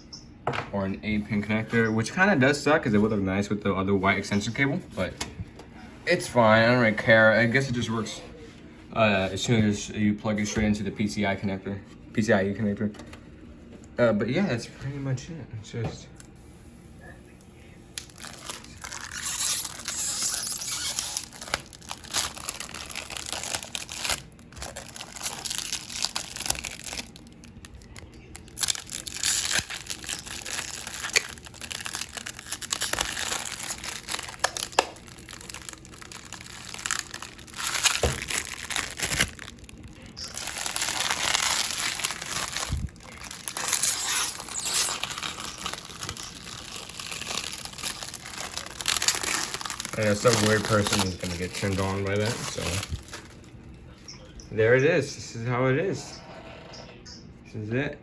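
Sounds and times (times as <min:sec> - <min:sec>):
plastic crinkling: 0:18.0 - 0:54.3.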